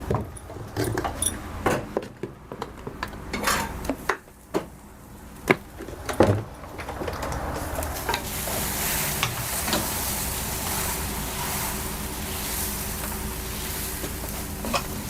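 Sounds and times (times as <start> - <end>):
metal utensils and dishes clattering: 3.3 - 3.8, 14.6 - 15.0.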